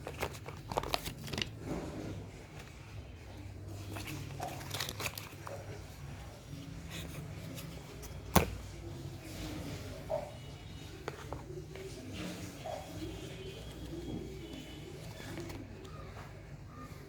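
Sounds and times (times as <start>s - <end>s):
packaging rustling: 0.0s - 1.7s, 3.7s - 6.0s.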